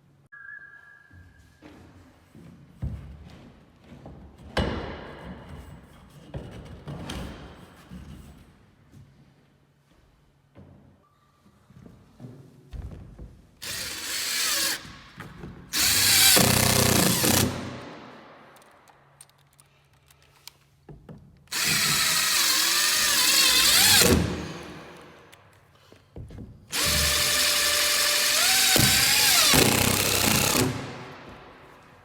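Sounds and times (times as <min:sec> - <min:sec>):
power drill running: 0:13.6 - 0:14.9, 0:15.7 - 0:18.0, 0:21.5 - 0:25.2, 0:26.7 - 0:31.3.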